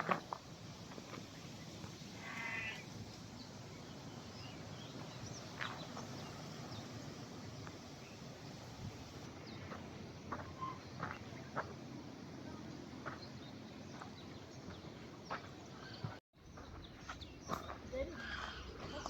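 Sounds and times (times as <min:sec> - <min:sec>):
faint outdoor background: 0:00.0 - 0:19.0
animal call: 0:02.2 - 0:02.9.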